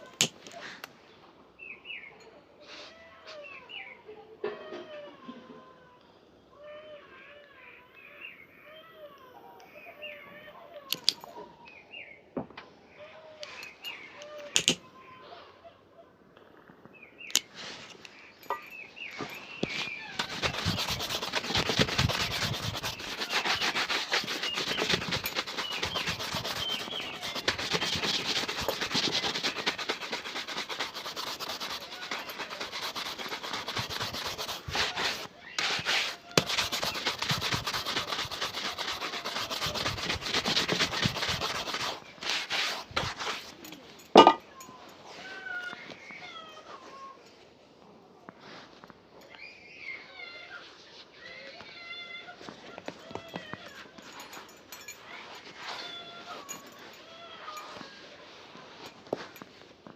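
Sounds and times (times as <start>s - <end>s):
brush scrubbing a shoe: 18.5s - 43.8s.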